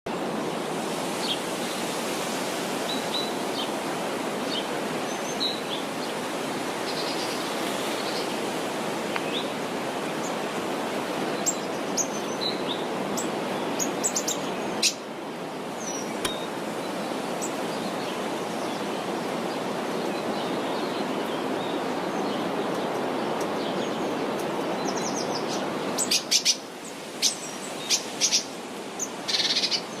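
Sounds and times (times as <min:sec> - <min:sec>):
birds chirping: 0:11.2 - 0:30.0.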